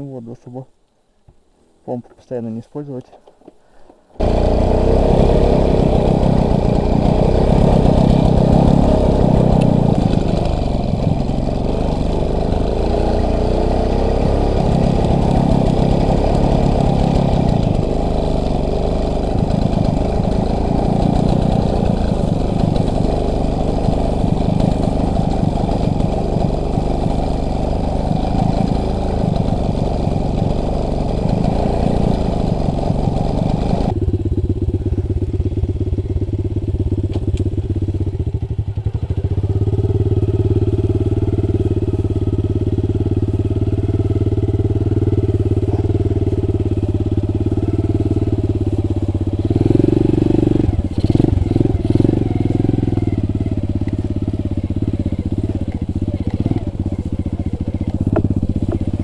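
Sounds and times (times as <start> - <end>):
motorcycle engine running: 4.2 - 59.0.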